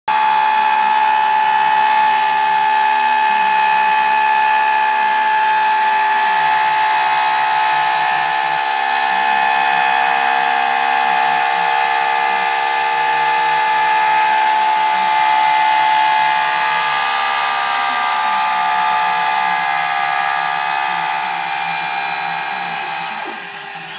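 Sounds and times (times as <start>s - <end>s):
high-pitched motor whine: 0.1s - 23.9s.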